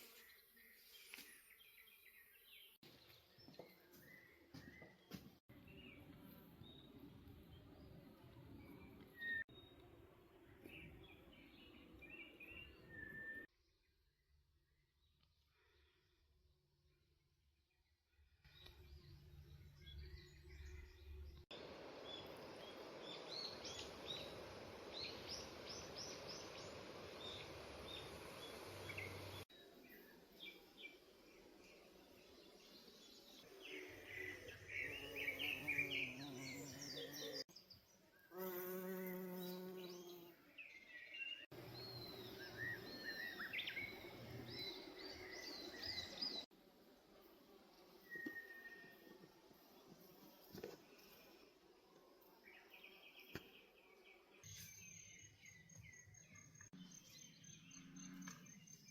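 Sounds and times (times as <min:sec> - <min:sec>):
steady background hiss: 0:21.6 - 0:29.4
birds chirping and singing: 0:32.5 - 0:37.4, 0:39.2 - 0:46.5.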